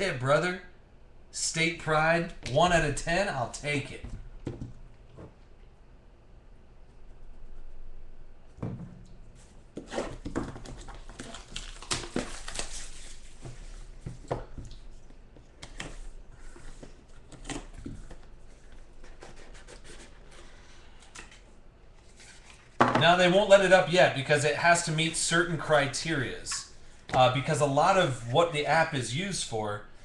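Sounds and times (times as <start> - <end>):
cards and packaging rustling: 10.0 - 14.2.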